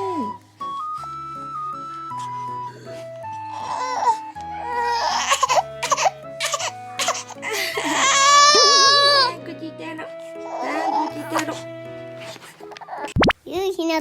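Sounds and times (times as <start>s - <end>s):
baby crying: 0.0s - 0.4s, 3.4s - 9.4s, 10.3s - 11.7s, 12.7s - 13.1s
background music of steady notes: 0.0s - 13.0s.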